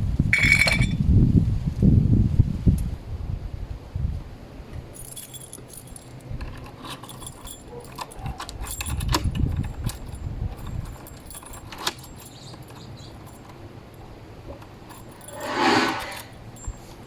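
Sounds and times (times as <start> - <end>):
metal lock clinks and clicks: 5.0 - 16.8.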